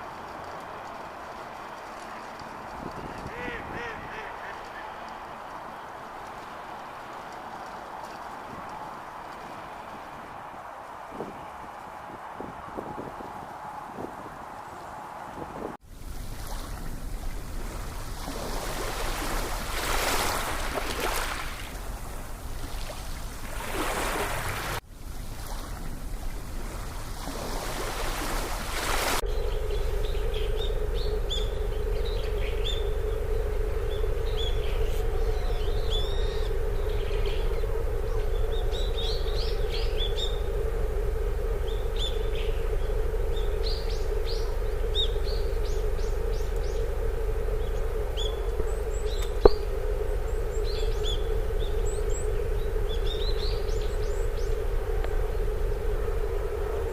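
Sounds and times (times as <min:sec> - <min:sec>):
steady low hum: 0:00.0 - 0:56.9
wind noise on microphone: 0:00.0 - 0:56.9
small birds chirping: 0:29.2 - 0:55.7.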